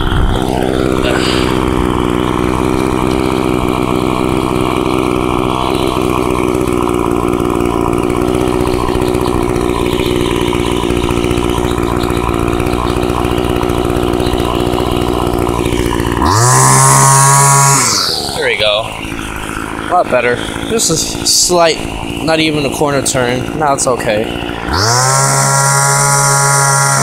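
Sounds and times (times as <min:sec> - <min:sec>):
small two-stroke engine idling: 0:00.0 - 0:27.0.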